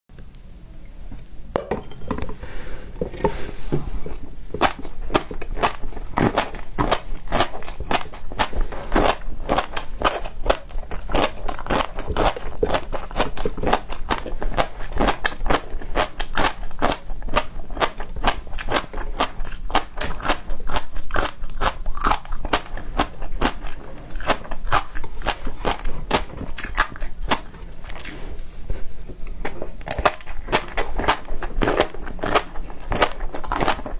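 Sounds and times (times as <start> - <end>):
crunching and chewing: 2.9 - 33.9.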